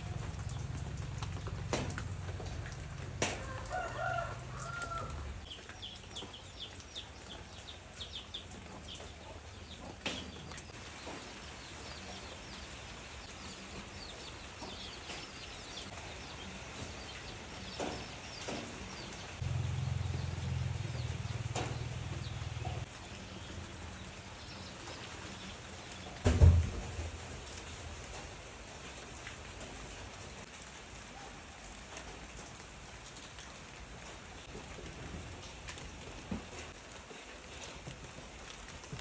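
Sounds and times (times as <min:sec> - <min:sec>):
water drips: 0:00.0 - 0:16.1
light rain falling: 0:00.0 - 0:39.0.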